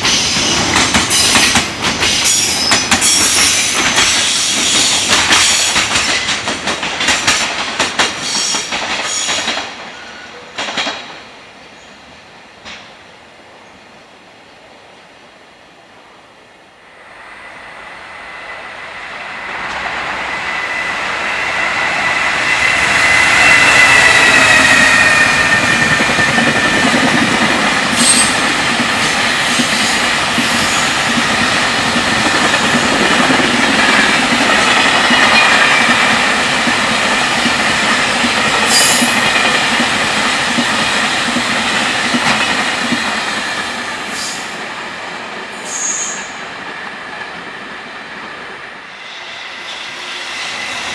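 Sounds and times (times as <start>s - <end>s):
rail-joint clacks: 0.0s - 11.4s, 12.6s - 13.0s, 19.4s - 44.7s
freight train rumble: 0.0s - 50.9s
locomotive high whine: 16.8s - 40.9s.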